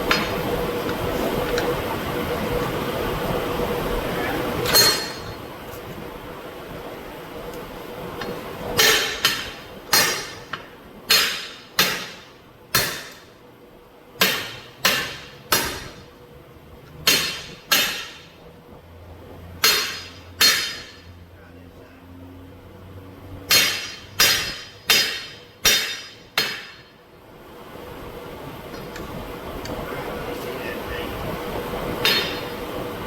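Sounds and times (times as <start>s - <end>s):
hammer striking steel rim: 4.6s - 5.4s, 8.8s - 13.3s, 14.2s - 16.0s, 17.0s - 18.4s, 19.6s - 21.1s, 23.5s - 27.0s, 32.0s - 32.6s.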